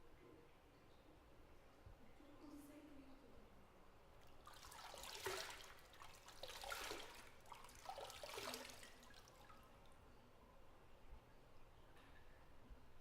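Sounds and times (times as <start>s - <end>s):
bathwater splashing and trickling: 4.2s - 9.9s.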